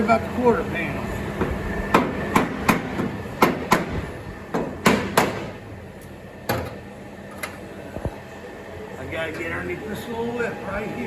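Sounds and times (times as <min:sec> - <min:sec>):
knocks on sheet metal: 0:01.9 - 0:05.6.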